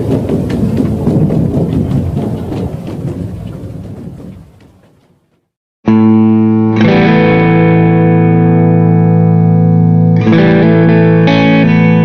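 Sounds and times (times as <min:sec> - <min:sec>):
distorted electric guitar chords: 0:05.8 - 0:12.0.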